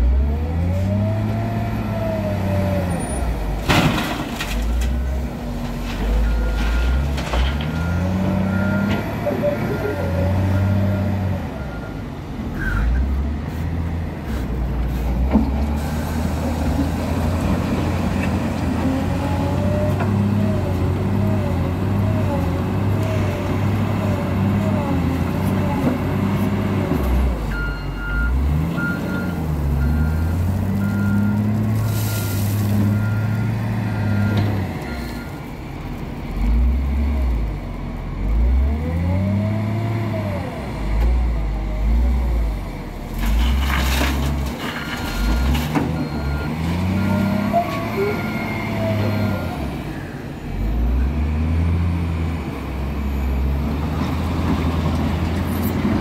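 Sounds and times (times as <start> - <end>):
wheel loader diesel engine revving: 0.0 - 3.7, 4.6 - 56.0
reversing alarm beeping: 27.5 - 35.3, 44.8 - 49.6.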